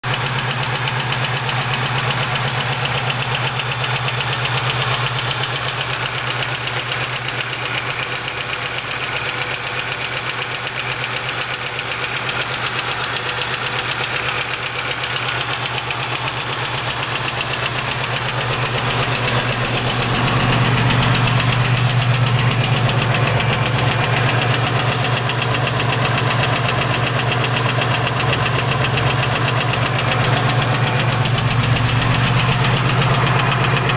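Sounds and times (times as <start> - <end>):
engine running with rhythmic knock: 0.1 - 33.9.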